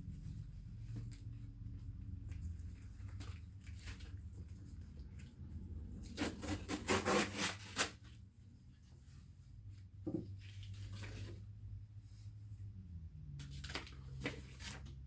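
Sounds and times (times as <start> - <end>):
packaging scraping and rubbing: 2.8 - 8.1.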